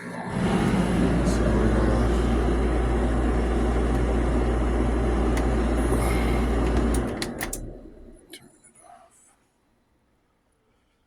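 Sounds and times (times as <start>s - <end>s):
dryer motor humming: 0.0s - 8.4s.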